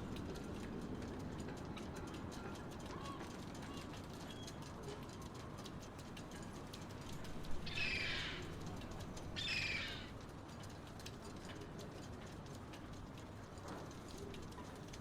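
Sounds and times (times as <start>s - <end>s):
low harbour background: 0.0s - 15.0s
large bird cawing: 7.6s - 10.2s.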